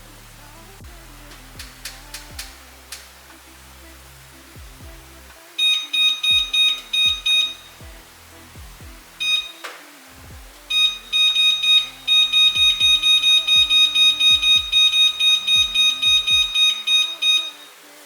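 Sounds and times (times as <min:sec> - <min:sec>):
background music: 0:00.0 - 0:18.0
rapid electronic alarm beeping: 0:05.6 - 0:08.0, 0:08.8 - 0:09.7, 0:10.7 - 0:17.8.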